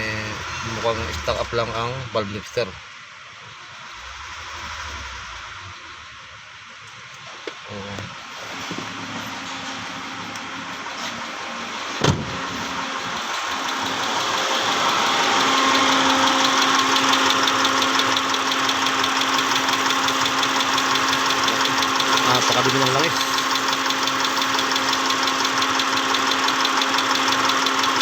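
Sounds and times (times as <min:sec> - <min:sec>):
fast even engine ticking: 0:00.0 - 0:02.1, 0:03.8 - 0:05.8, 0:13.1 - 0:28.0
car engine idling: 0:00.0 - 0:28.0.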